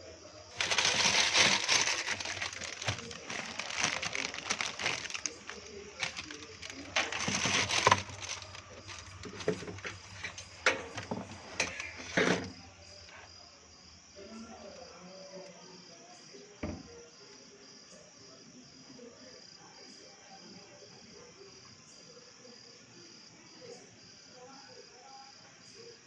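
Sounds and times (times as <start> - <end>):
plastic packaging crinkling: 0.5 - 12.5.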